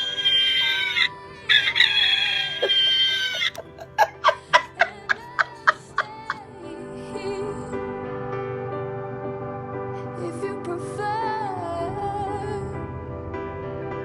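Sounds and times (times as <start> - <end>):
recorded rooster crow: 0.0 - 6.4.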